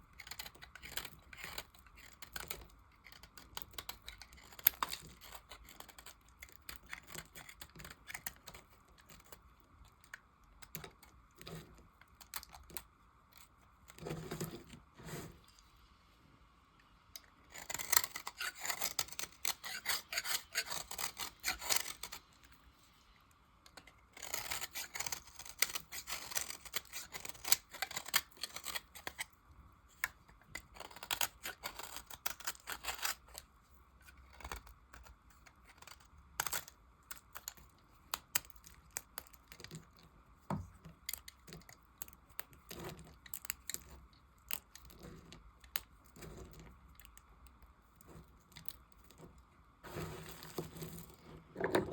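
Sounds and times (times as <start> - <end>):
knife cutting soap: 0.0 - 15.6, 17.2 - 22.5, 23.7 - 51.9.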